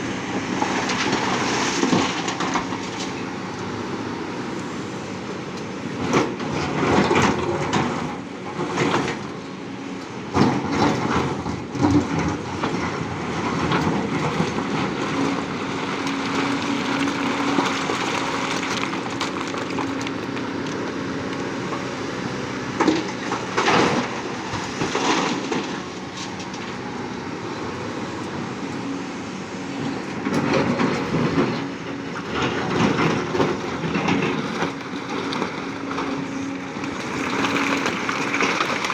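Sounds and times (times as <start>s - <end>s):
excavator diesel engine running: 0.0s - 38.9s
loud metallic clanking and scraping: 22.8s - 26.8s.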